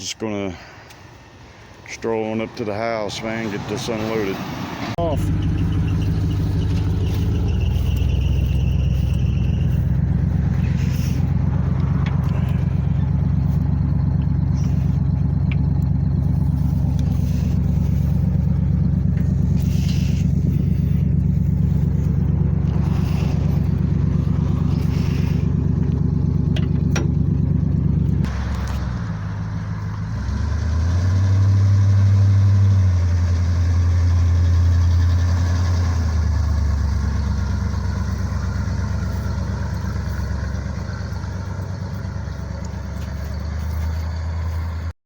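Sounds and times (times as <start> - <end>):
vehicle engine running: 0.0 - 45.0
faint rattles and scrapes: 5.6 - 28.9.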